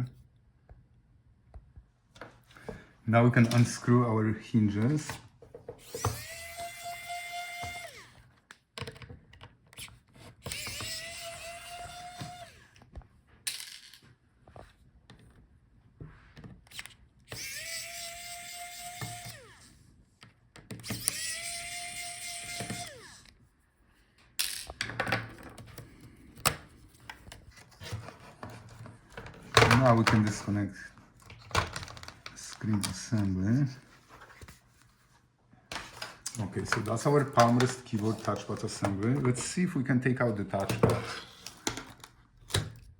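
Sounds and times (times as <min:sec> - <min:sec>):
electric screwdriver whining: 0:05.8 - 0:08.3, 0:09.8 - 0:12.8, 0:16.7 - 0:19.8, 0:20.6 - 0:23.4
handling clicks and knocks: 0:35.7 - 0:39.6.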